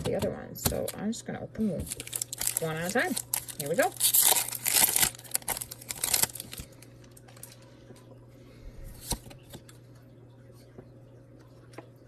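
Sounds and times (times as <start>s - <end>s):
foil wrapper tearing and crinkling: 1.8s - 7.6s.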